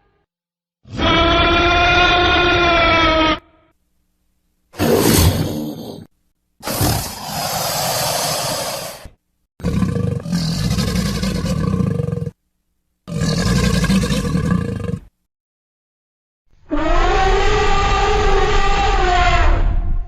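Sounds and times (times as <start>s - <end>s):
dinosaur roars: 4.8s - 12.4s, 13.1s - 15.1s.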